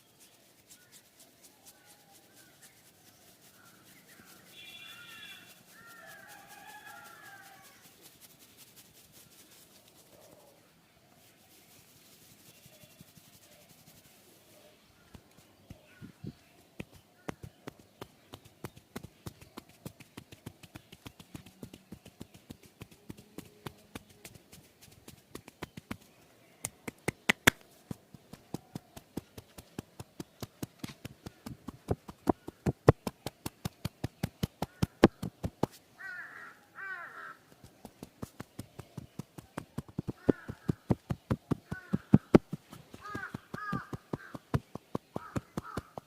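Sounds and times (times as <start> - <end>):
rhythmic hand-tapping massage strokes: 0.0 - 10.2, 11.2 - 14.4, 15.0 - 35.9, 37.4 - 46.0
crow cawing: 36.0 - 37.4, 40.2 - 40.7, 41.7 - 42.2, 43.0 - 44.4, 45.2 - 46.0.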